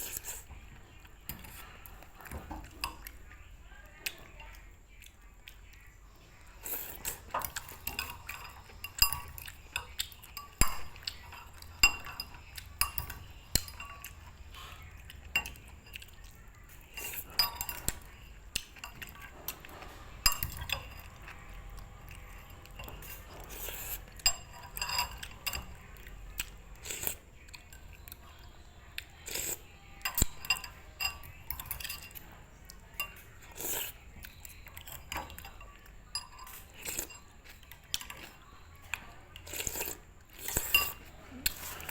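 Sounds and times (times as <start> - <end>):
metal utensils clinking on pots: 6.6 - 15.9, 16.8 - 26.0, 30.0 - 34.0, 34.6 - 38.8, 40.4 - 41.9.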